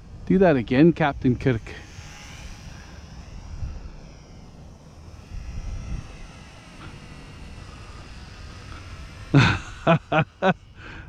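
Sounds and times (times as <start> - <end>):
wind rumbling on microphone: 0.0 - 4.2, 5.2 - 6.6
model plane motor whining: 0.0 - 11.0.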